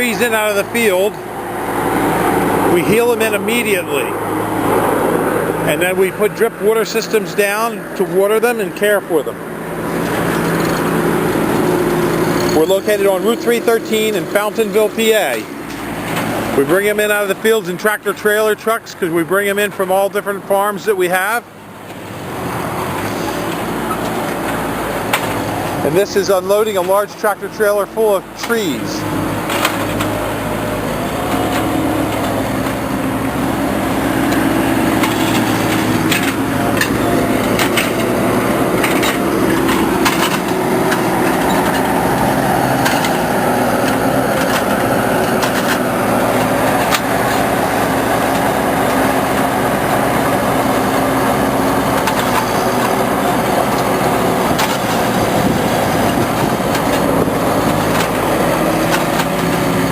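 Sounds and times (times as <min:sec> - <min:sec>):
machinery engine running: 0:00.0 - 0:59.9
sharp knocks and clatter: 0:09.9 - 0:16.5, 0:22.8 - 0:25.8, 0:29.4 - 0:30.4, 0:31.1 - 0:49.7, 0:50.6 - 0:59.9.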